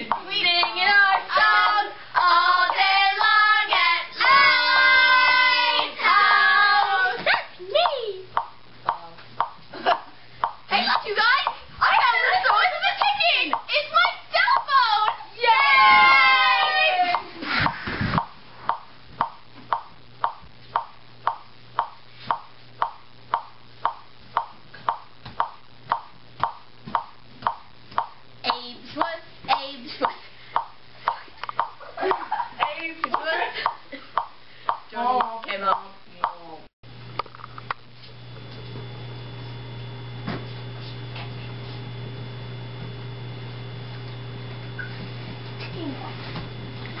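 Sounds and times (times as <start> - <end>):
low electrical hum: 0.0 - 47.0
phone ticking: 7.8 - 11.6, 13.0 - 13.7, 18.2 - 36.4.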